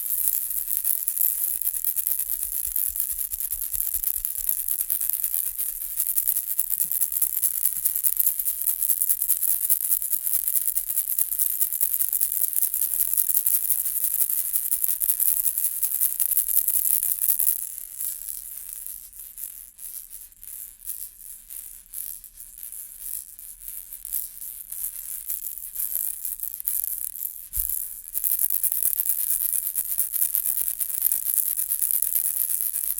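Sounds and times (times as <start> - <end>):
baby rattle shaken: 0.0 - 9.2, 27.6 - 32.9.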